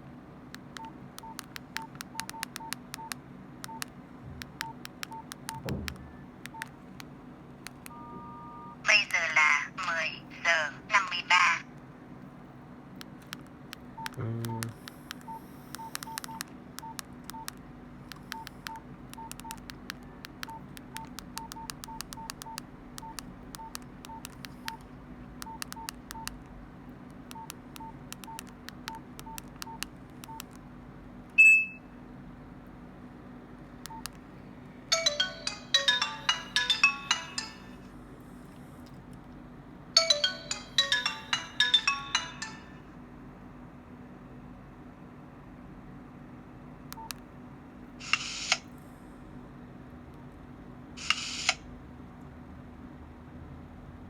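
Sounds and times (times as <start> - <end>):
short keypad beeps: 0.7 - 6.7, 7.7 - 8.8, 14.0 - 17.6, 18.2 - 19.6, 20.3 - 24.8, 25.4 - 26.4, 27.3 - 30.5, 31.4 - 31.9, 33.9 - 34.2
phone ringtone melodies: 34.9 - 37.9, 40.0 - 43.0.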